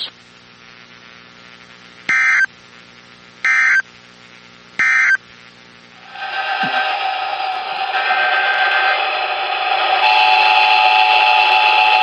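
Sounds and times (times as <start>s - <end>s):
screeching digital data tones: 6.0s - 12.0s.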